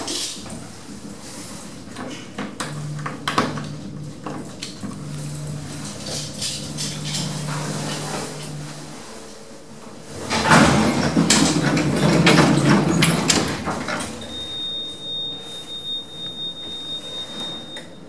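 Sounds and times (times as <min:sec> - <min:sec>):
lift doors rumbling and rattling: 0:00.0 - 0:18.0
steady high-pitched beep: 0:14.2 - 0:17.9.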